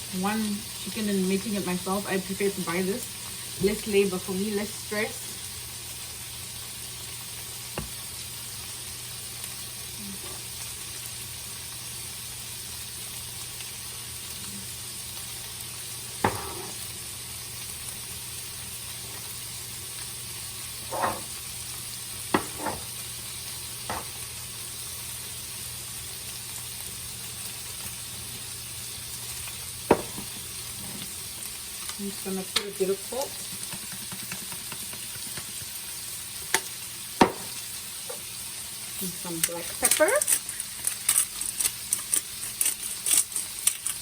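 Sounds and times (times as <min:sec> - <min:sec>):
food sizzling in a pan: 0:00.0 - 0:44.0
utensil knocking against pan: 0:16.2 - 0:16.6, 0:22.4 - 0:22.9, 0:29.9 - 0:30.3, 0:33.4 - 0:35.6, 0:37.2 - 0:37.5.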